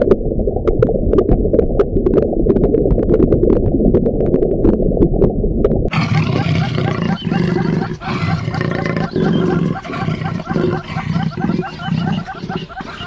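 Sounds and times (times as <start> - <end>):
animal grunting: 5.9 - 13.0.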